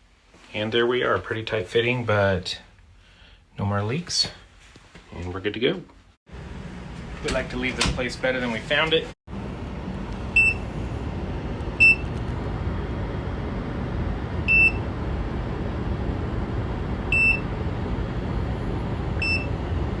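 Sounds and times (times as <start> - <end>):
low rumbling hum: 6.3 - 20.0.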